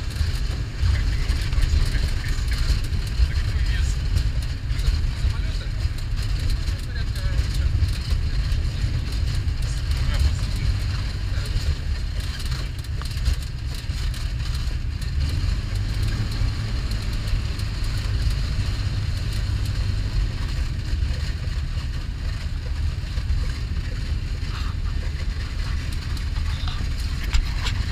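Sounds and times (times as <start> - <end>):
light aircraft engine droning: 0.0 - 27.9.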